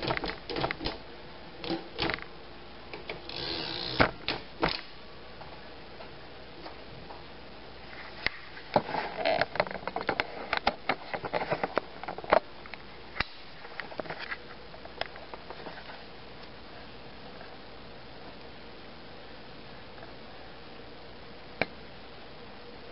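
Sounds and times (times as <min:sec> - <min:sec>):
typewriter keys clacking: 0:00.0 - 0:01.0.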